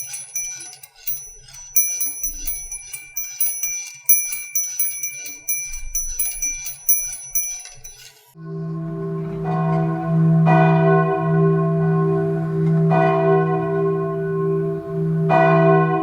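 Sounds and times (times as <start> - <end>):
chimes ringing: 0.0 - 8.4.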